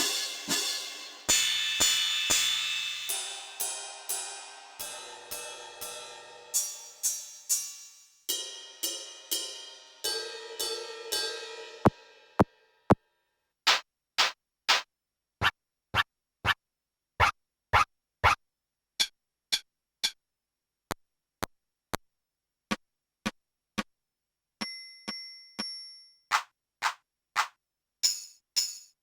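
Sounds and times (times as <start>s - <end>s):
ringing metallic hit: 0.0s - 12.5s.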